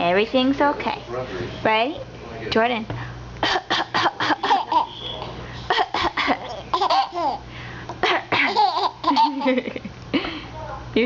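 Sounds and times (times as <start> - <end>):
woman coughing: 3.4 - 4.8, 5.7 - 6.6, 8.0 - 8.6
baby laughing: 3.6 - 7.4, 8.0 - 9.7.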